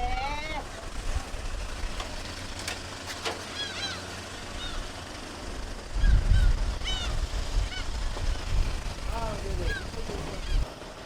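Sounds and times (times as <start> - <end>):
gulls calling: 0.0 - 11.0.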